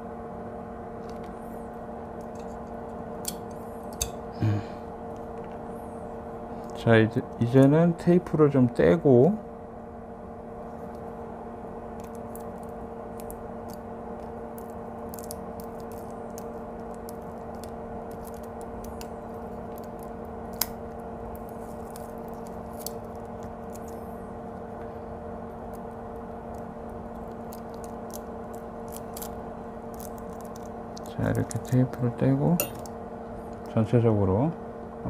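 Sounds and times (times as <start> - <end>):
steady low hum: 0.0 - 35.0
tape peeling crackles: 11.9 - 24.2, 25.5 - 31.8.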